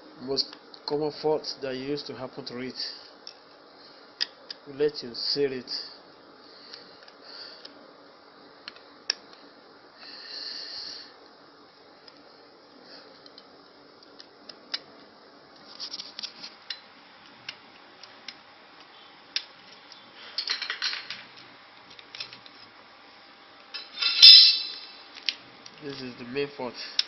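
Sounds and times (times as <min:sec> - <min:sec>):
small metallic clicks and rattles: 0:19.4 - 0:22.7
loud metallic clatter: 0:23.9 - 0:24.9.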